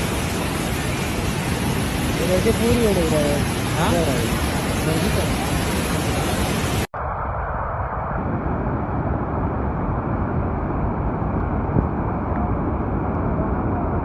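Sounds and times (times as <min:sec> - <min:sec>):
floodwater rushing: 0:00.0 - 0:06.9.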